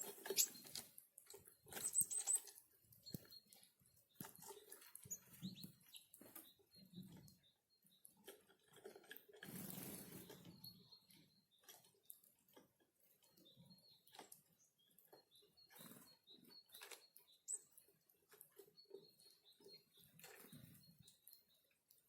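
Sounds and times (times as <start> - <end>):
high bird chirps: 0.0 - 0.8, 1.4 - 8.2.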